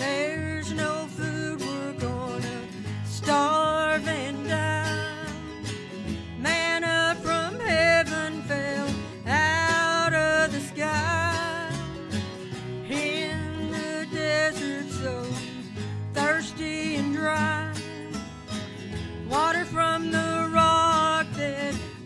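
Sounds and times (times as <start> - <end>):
acoustic guitar: 0.0 - 22.0
bluegrass gospel music: 0.0 - 22.0.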